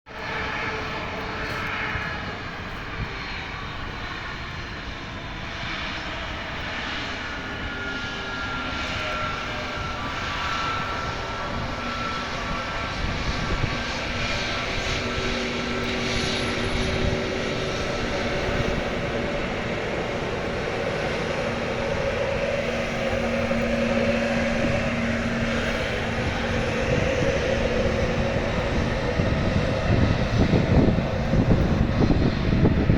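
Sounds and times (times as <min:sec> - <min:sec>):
jet engine rush: 0:00.1 - 0:32.9
faint whining tones: 0:00.2 - 0:32.9.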